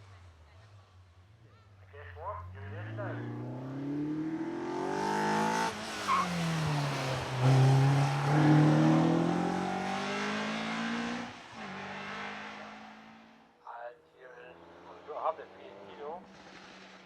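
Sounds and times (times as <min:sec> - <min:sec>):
car engine accelerating hard: 0:02.5 - 0:13.4.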